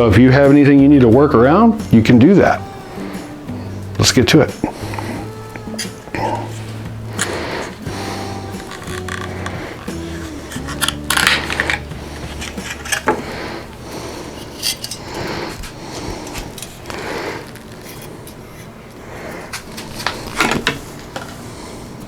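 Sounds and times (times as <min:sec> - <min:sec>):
metal hardware clinking and scraping: 0:04.5 - 0:18.7, 0:19.4 - 0:21.5.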